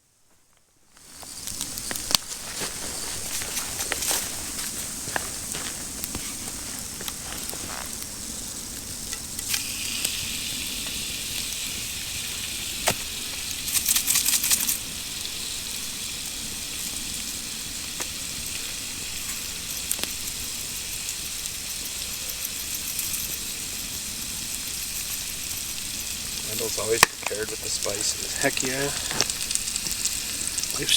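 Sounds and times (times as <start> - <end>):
food sizzling over campfire: 0.1 - 30.9
spitting pops: 12.7 - 14.8.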